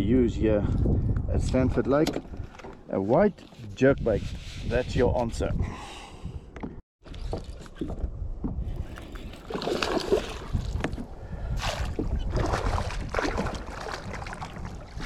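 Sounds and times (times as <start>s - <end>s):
water splashing around boat: 7.0s - 15.0s.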